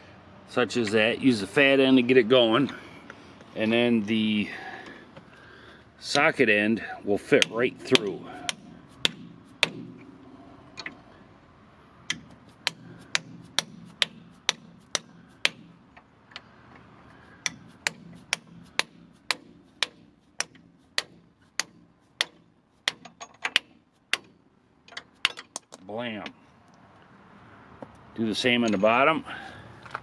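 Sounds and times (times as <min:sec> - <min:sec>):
hammer tapping on metal: 0:07.3 - 0:10.0, 0:12.1 - 0:15.8, 0:17.4 - 0:25.7.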